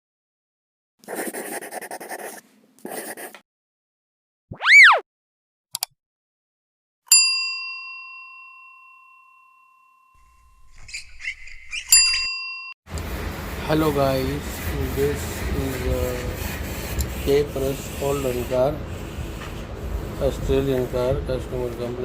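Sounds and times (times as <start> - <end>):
tone sweeping up and down: 4.5 - 5.0
bell ding ringing out: 7.1 - 10.5, 12.0 - 12.8.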